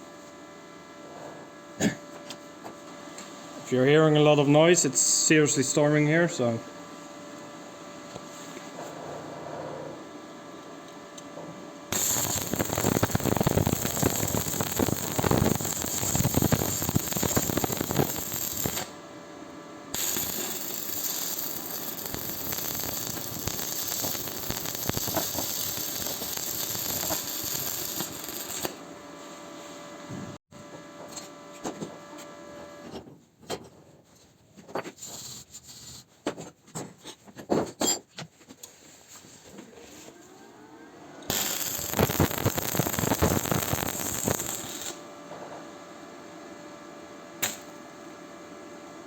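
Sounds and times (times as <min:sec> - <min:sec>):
electric power tool whining: 0:41.2 - 0:45.0.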